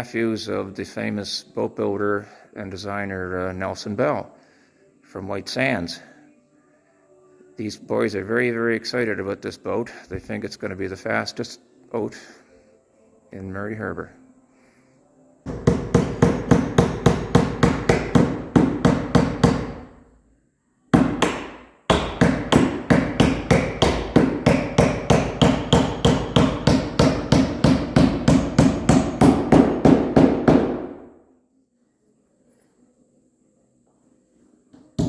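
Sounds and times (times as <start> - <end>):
hammer blows on wooden hull: 15.5 - 19.8, 21.0 - 30.9.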